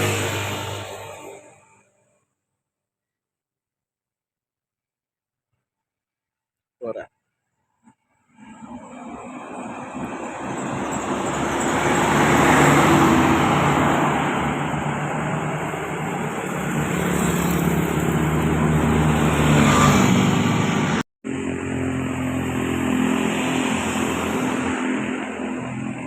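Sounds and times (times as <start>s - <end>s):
tyre and road noise: 0.0s - 1.6s, 8.3s - 26.0s
diesel engine running: 8.5s - 19.6s.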